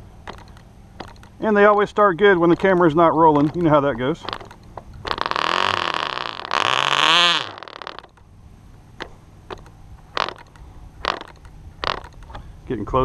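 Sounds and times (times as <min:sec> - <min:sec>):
faint clicks: 0:00.2 - 0:01.3
small glow engine buzzing: 0:04.2 - 0:08.2, 0:09.5 - 0:12.4.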